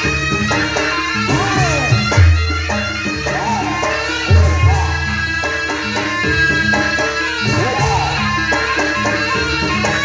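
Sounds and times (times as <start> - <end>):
drums: 0.0 - 10.0
reedy shawm melody: 0.0 - 10.0.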